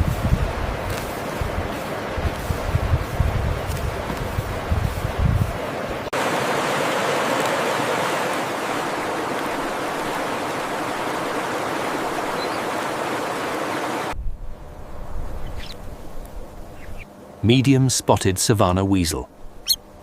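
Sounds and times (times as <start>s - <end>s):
stream water rushing: 0.0s - 14.2s.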